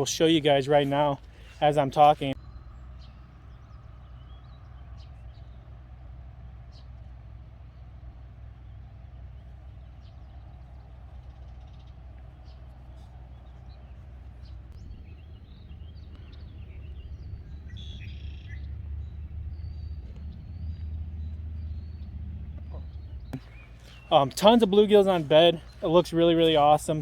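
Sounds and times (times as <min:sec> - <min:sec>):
wind rumble on microphone: 0:09.9 - 0:23.7
bird chirps and calls: 0:11.5 - 0:27.0.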